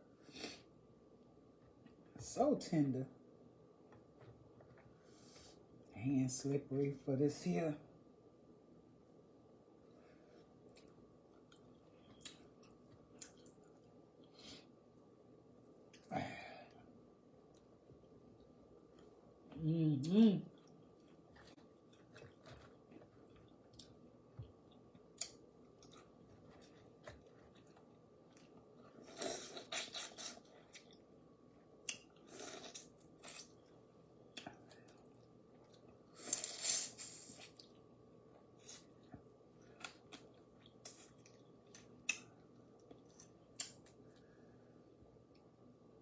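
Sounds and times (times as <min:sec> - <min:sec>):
chewing: 0:10.7 - 0:13.9, 0:20.5 - 0:31.0.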